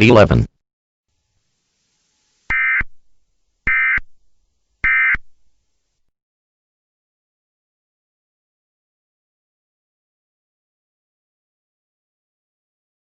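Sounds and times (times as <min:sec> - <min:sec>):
digital data tone bursts: 0:02.5 - 0:02.9.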